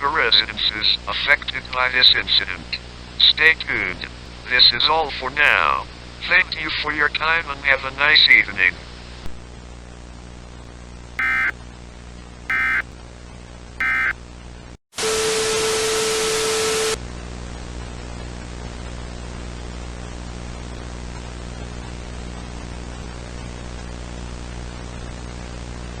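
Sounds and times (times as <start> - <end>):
data tone bursts: 11.2 - 11.5, 12.5 - 12.8, 13.8 - 14.1.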